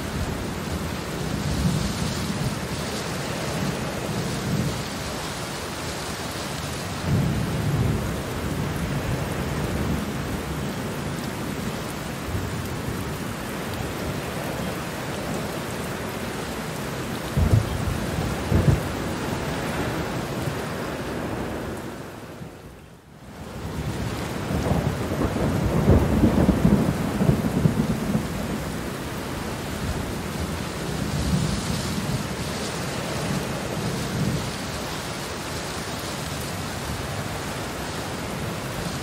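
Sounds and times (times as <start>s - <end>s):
steady rain: 0.0s - 39.0s
thunder rumble: 17.3s - 22.5s, 23.5s - 34.7s
sharp thunder claps: 17.4s - 18.9s.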